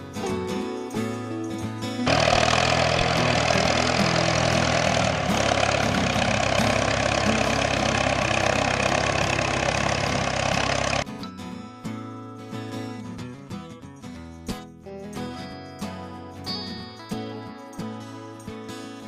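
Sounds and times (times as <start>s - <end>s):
vehicle engine running: 2.0s - 11.0s.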